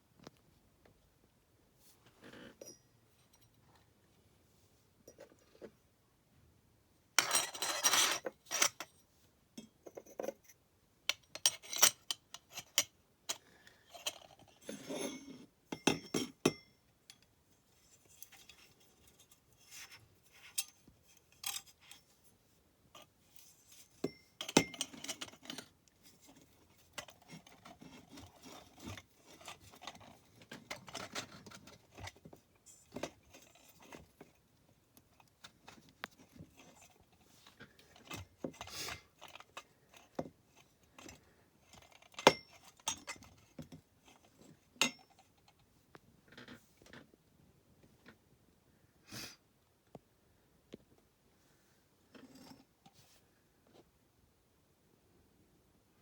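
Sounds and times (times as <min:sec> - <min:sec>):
metal parts clinking and scraping: 0:07.2 - 0:08.9.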